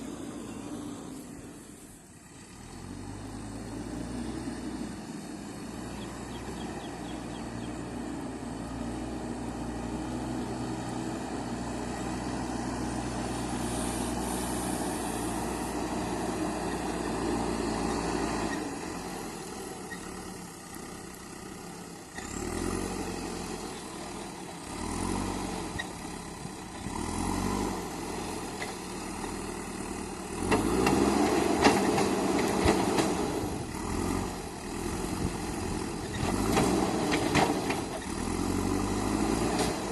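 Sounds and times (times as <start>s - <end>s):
diesel engine running: 0.0s - 39.9s
knocks and clatter: 36.2s - 38.0s.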